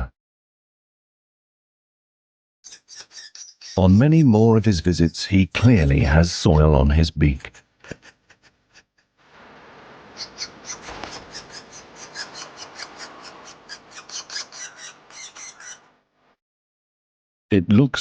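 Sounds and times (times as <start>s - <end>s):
nestlings squawking calls: 2.7s - 3.8s, 9.9s - 15.9s
nestlings rasping hiss: 9.3s - 15.8s.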